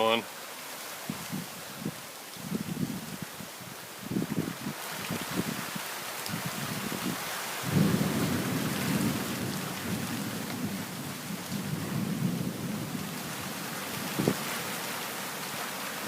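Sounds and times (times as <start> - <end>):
rain falling: 0.0 - 16.0
thunder rumbling: 6.3 - 14.6.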